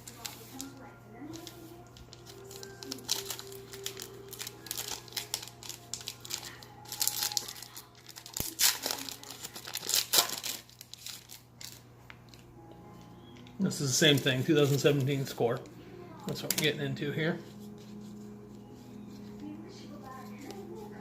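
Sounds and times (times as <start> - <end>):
wrapper tearing and crinkling: 0.0 - 12.5.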